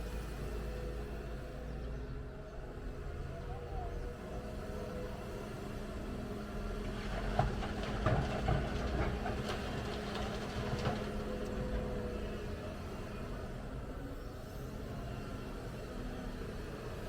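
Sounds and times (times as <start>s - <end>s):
excavator diesel engine running: 0.0s - 17.0s
clanks and knocks: 7.0s - 11.4s.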